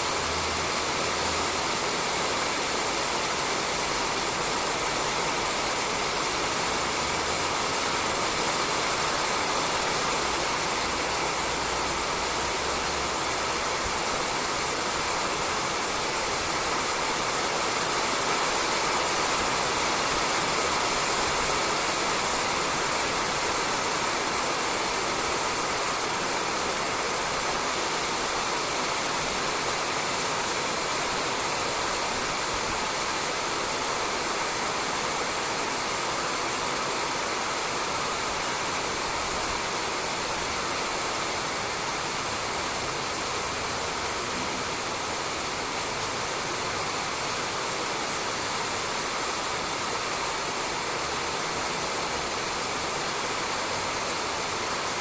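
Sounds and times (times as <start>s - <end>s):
rain falling on a roof: 0.0s - 55.0s.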